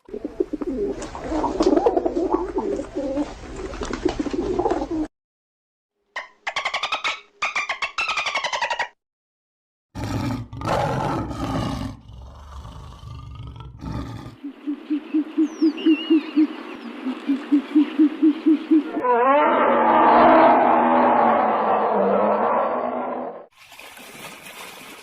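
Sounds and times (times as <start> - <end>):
animal roaring: 10.0 - 14.4, 18.9 - 23.5
low animal hoots: 10.0 - 19.7
loud noisy animal call: 19.0 - 21.5.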